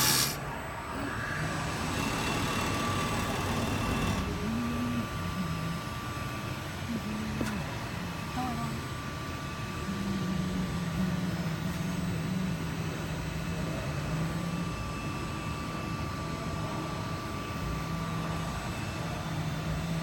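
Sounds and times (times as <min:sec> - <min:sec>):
cutting machine hum: 0:00.0 - 0:20.0.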